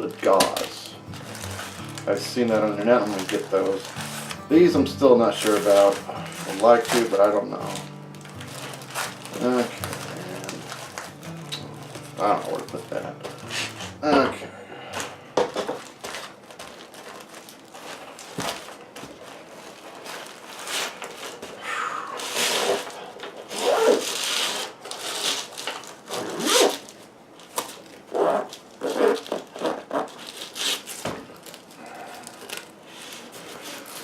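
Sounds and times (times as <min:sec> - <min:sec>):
plastic wrappers rustling: 0:00.0 - 0:21.6, 0:22.2 - 0:34.0.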